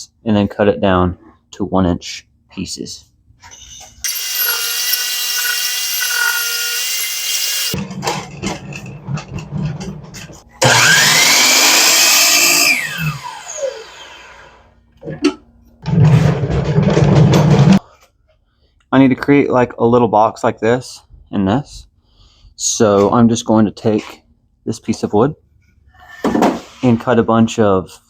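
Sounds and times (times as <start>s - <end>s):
power saw cutting wood: 4.0s - 7.8s, 10.6s - 14.2s.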